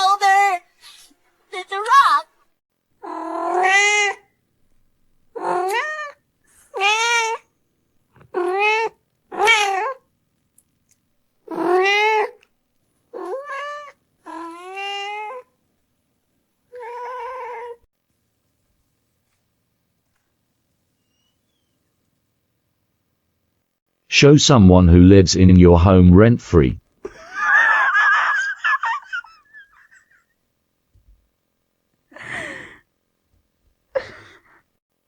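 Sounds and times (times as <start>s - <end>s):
cat meowing: 3.0s - 4.2s, 5.4s - 7.4s, 8.3s - 10.0s, 11.5s - 12.4s, 13.1s - 15.5s, 16.7s - 17.8s.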